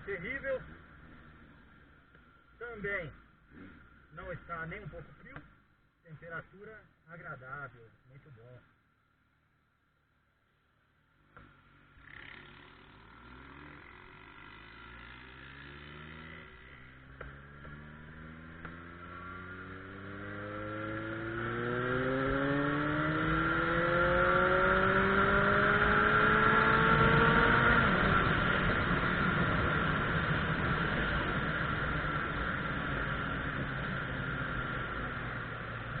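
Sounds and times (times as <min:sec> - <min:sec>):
motorcycle engine accelerating: 0:11.2 - 0:36.0.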